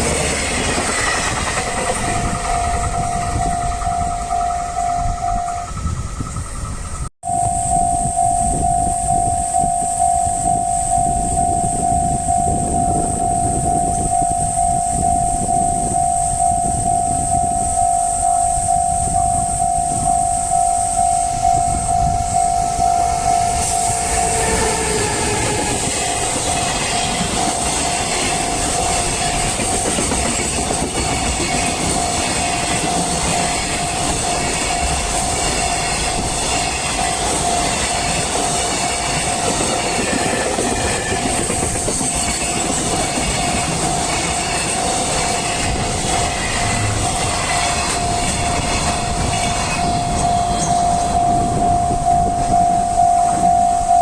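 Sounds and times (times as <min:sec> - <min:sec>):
train wheels clattering on rails: 0:00.0 - 0:07.1, 0:21.8 - 0:52.6
level crossing bell ringing: 0:01.2 - 0:06.6, 0:07.2 - 0:28.8, 0:48.2 - 0:54.0.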